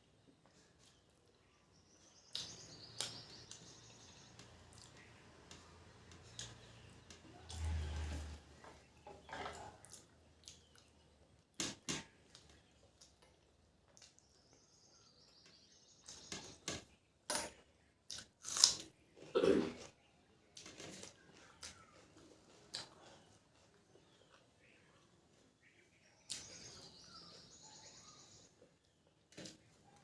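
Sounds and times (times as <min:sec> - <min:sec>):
person chewing and smacking: 0:09.5 - 0:14.4.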